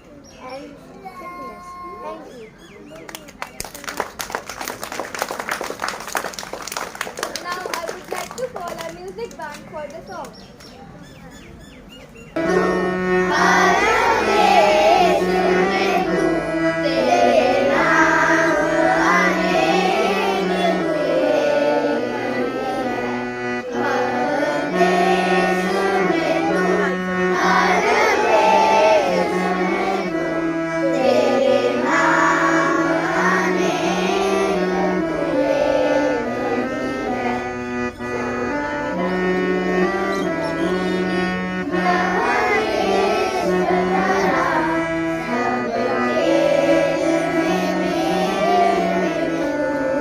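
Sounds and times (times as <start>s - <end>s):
instrumental accompaniment: 12.3s - 50.0s
children singing: 12.4s - 50.0s.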